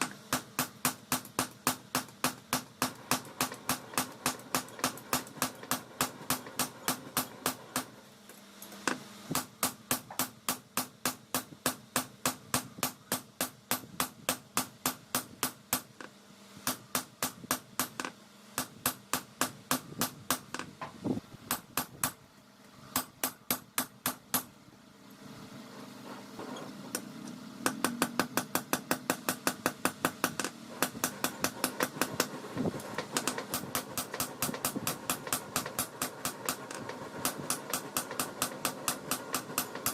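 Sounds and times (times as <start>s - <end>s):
hammer striking steel on anvil: 0.0s - 7.9s, 8.8s - 16.0s, 16.6s - 20.7s, 26.9s - 32.4s, 33.0s - 39.9s.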